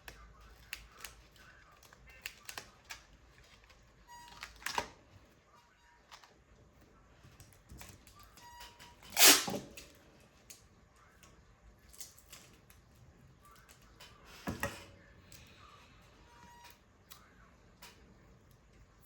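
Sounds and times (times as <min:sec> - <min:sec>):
paper rustling: 0:00.0 - 0:04.8.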